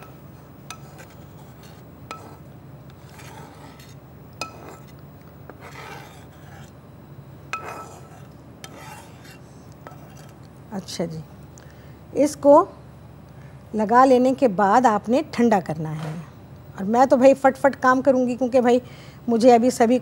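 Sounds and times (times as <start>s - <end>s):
spoon scraping a dish: 0.0s - 6.8s, 7.5s - 10.5s.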